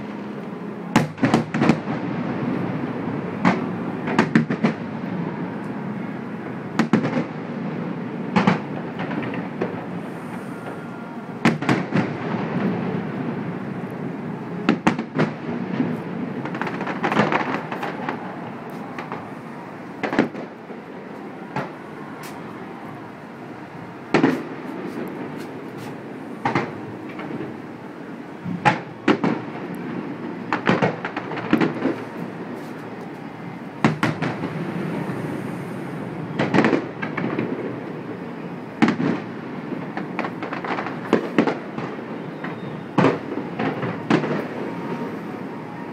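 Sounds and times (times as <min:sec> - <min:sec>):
fireworks shells bursting: 0:24.1 - 0:27.6.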